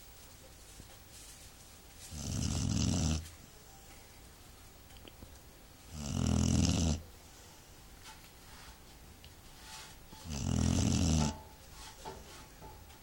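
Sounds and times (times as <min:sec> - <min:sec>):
person snoring: 0:02.2 - 0:03.2, 0:05.9 - 0:07.0, 0:10.2 - 0:11.3.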